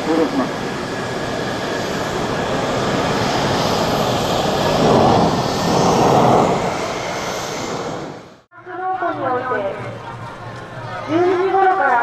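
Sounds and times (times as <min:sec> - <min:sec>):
jet engines at takeoff power: 0:00.0 - 0:08.5.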